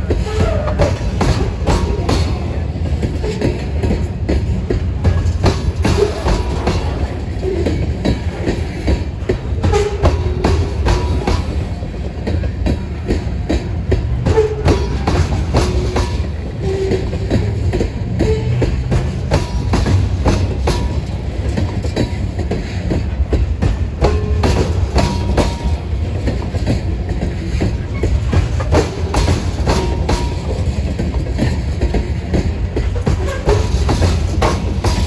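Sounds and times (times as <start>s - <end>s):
low train rumble: 0.0s - 35.0s
train wheels clacking over rail joints: 0.0s - 35.0s
wheel squeals: 27.3s - 35.0s.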